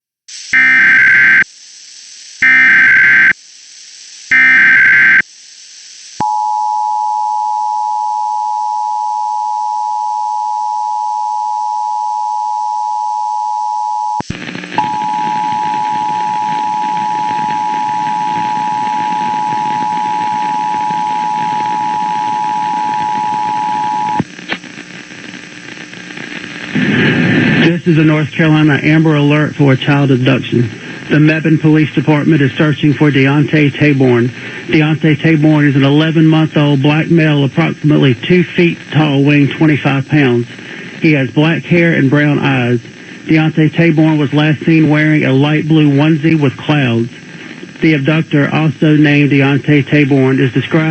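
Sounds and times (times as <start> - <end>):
screeching data bursts: 0.5 - 1.4, 2.4 - 3.4, 4.3 - 5.2.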